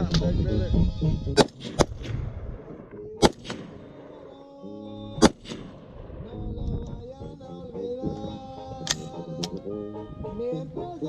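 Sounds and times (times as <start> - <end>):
background music: 0.0 - 11.0
rifle shots: 1.4 - 4.4, 5.2 - 6.4.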